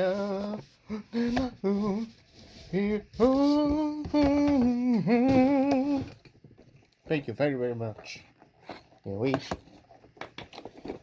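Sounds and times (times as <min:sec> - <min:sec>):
person singing without words: 0:00.0 - 0:06.2.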